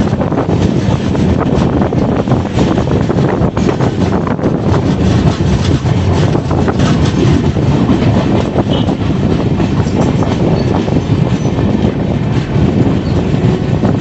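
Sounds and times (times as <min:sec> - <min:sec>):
train wheels rumbling on rails: 0:00.0 - 0:14.0.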